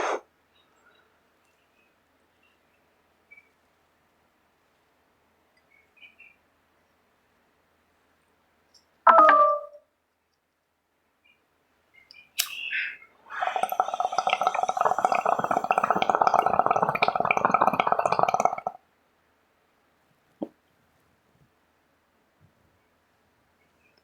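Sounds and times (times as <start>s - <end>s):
bong water bubbling: 13.3s - 18.8s.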